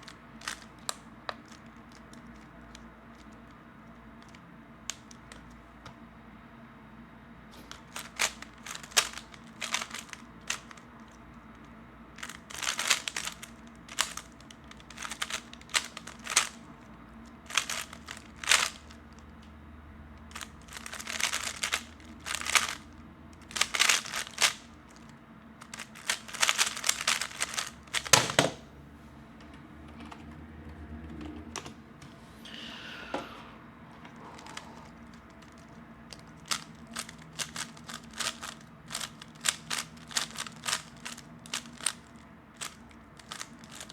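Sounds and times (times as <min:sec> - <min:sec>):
plastic puzzle cube clacking: 0:00.0 - 0:03.3, 0:04.2 - 0:05.5, 0:07.7 - 0:11.1, 0:12.2 - 0:16.6, 0:17.4 - 0:19.0, 0:20.3 - 0:28.4, 0:34.3 - 0:43.9.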